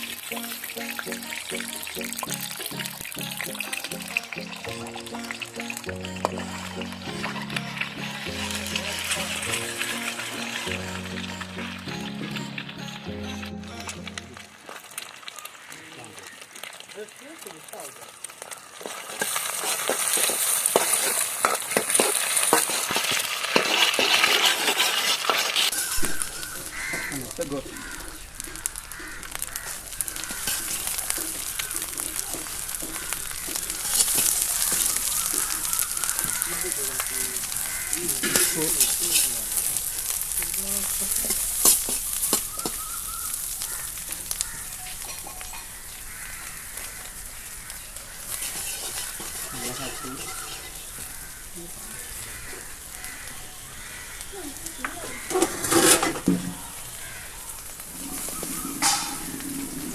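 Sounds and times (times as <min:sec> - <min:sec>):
food sizzling in hot oil: 0:00.0 - 0:59.9
spatula scraping a pan: 0:18.8 - 0:45.8, 0:47.6 - 0:51.5, 0:55.1 - 0:56.6, 0:58.1 - 0:59.9.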